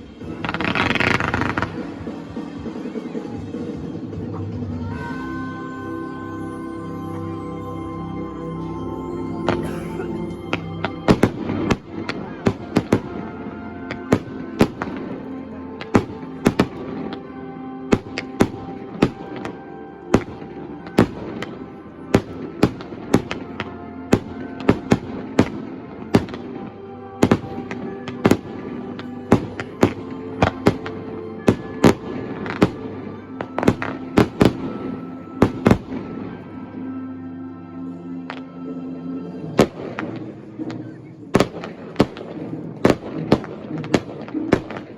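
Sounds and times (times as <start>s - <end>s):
fireworks bursting: 0.0s - 3.8s, 9.5s - 17.3s, 17.9s - 36.4s, 39.6s - 44.9s
orchestral music: 0.0s - 44.9s.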